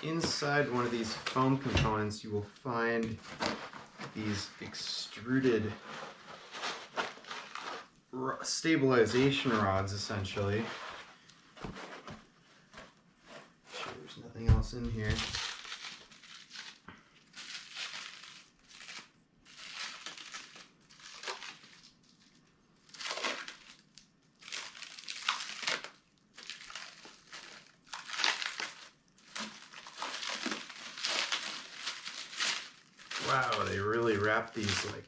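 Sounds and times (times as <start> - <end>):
plastic wrap crinkling: 0.0 - 2.0, 2.6 - 8.0, 14.8 - 35.0.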